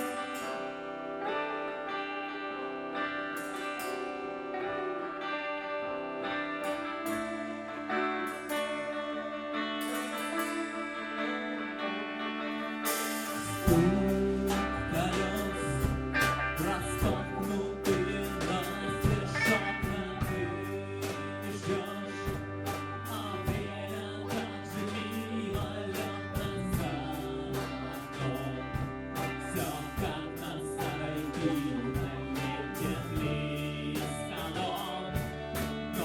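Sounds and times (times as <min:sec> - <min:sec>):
rock band playing: 0:00.0 - 0:36.0
man singing: 0:13.4 - 0:36.0.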